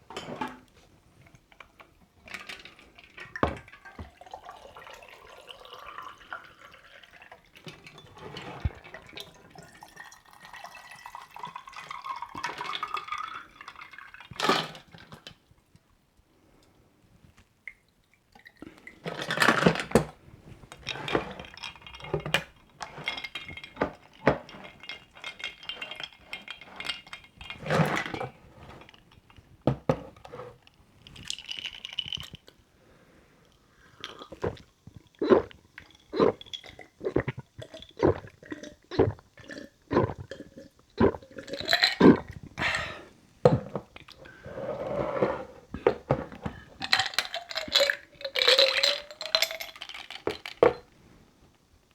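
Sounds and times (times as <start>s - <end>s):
water pouring: 2.4s - 15.0s, 20.7s - 32.5s, 34.0s - 50.9s
ice cubes clinking against glass: 20.8s - 29.0s, 31.2s - 32.5s, 41.4s - 43.0s, 46.1s - 50.9s.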